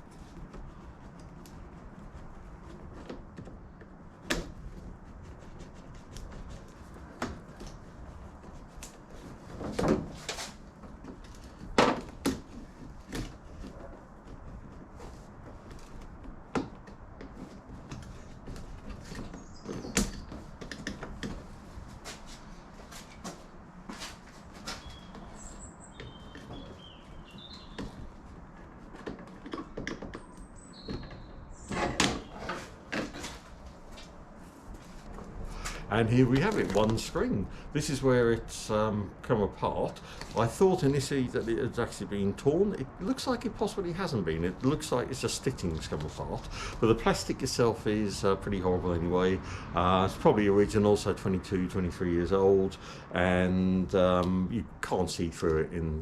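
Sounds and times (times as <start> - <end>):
knocks and handling noises: 0.0 - 37.1.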